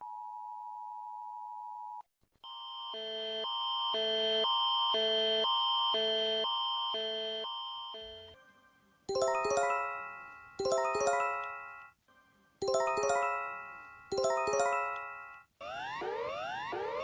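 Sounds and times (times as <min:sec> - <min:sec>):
electronic chimes: 0:09.1 - 0:11.9, 0:12.6 - 0:15.4.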